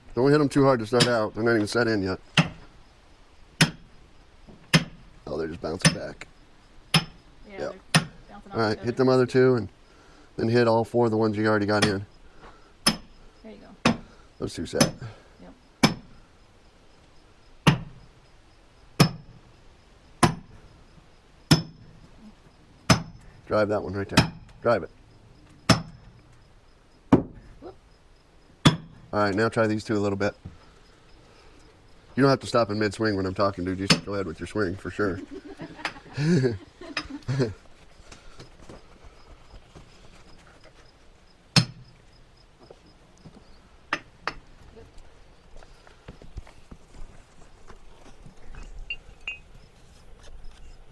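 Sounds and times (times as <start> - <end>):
maul striking steel wedge: 2.4 - 2.6, 3.6 - 3.9, 4.7 - 5.0, 6.9 - 7.2, 7.9 - 8.2, 12.8 - 13.1, 15.8 - 16.1, 19.0 - 19.3, 21.5 - 21.8, 28.6 - 28.9
maul striking steel wedges: 2.4 - 2.7, 3.6 - 3.9, 4.6 - 5.1, 5.8 - 6.2, 6.9 - 7.2, 7.9 - 8.2, 12.8 - 13.2, 14.8 - 15.1, 15.8 - 16.1, 17.6 - 18.0, 19.0 - 19.4, 21.5 - 21.9, 22.9 - 23.3, 24.2 - 24.6, 25.7 - 26.0, 28.6 - 29.0, 33.9 - 34.1, 41.6 - 41.8
short metallic ring: 48.9 - 49.5.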